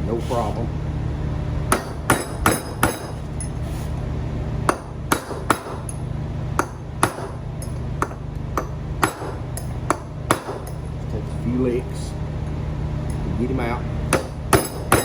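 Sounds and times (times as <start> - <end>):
hammer striking metal punch: 1.7 - 3.6, 4.7 - 10.9, 14.1 - 15.0.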